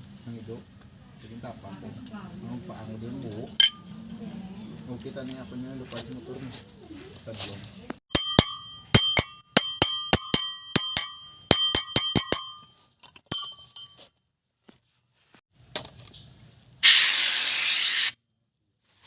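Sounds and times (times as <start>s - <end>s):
metal part struck with ringing taps: 3.6s - 3.8s, 8.1s - 12.7s, 13.3s - 14.0s
loud burst of hiss: 16.8s - 18.2s.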